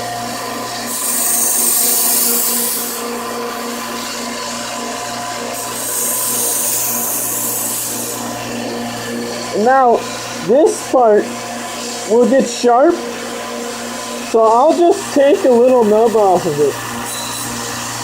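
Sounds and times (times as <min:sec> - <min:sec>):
knife sharpener motor humming: 0:00.0 - 0:18.0
knife blade grinding: 0:00.8 - 0:03.1, 0:05.5 - 0:08.2, 0:17.0 - 0:17.9.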